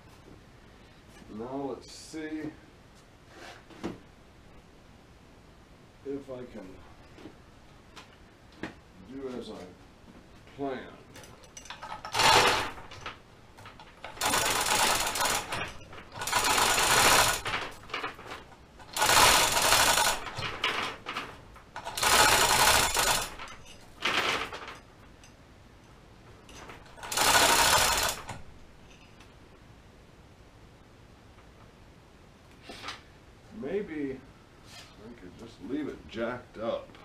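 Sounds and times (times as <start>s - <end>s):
chain hoist rattling: 11.1s - 24.9s, 26.5s - 28.5s.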